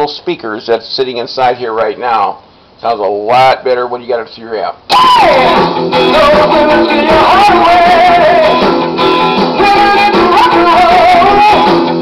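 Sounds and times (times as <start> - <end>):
person singing: 4.9 - 8.7, 9.5 - 11.9
strummed guitar: 4.9 - 12.0.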